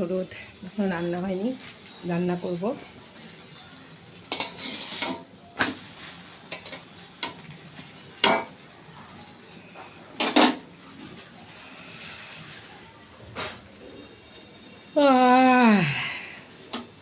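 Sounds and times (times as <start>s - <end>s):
pots and dishes clattering: 1.2s - 11.4s.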